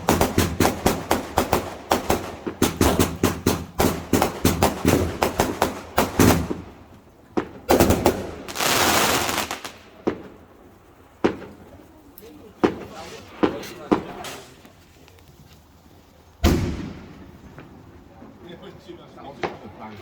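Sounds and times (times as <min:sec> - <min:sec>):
fireworks banging: 0:00.0 - 0:15.5, 0:16.2 - 0:20.0
firework hiss: 0:07.3 - 0:10.3.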